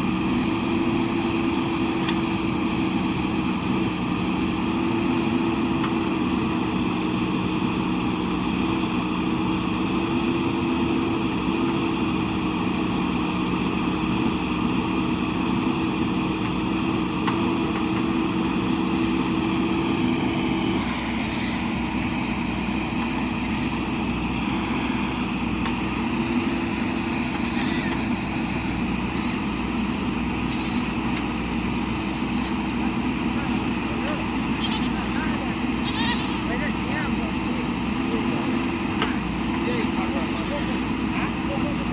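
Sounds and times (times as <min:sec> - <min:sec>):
diesel engine running: 0:00.0 - 0:41.9.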